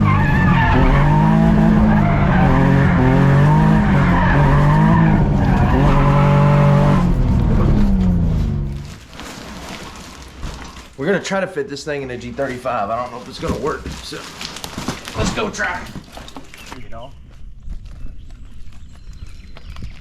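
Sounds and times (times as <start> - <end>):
tire squeal: 0.0 - 7.6
car engine revving hard: 0.0 - 8.9.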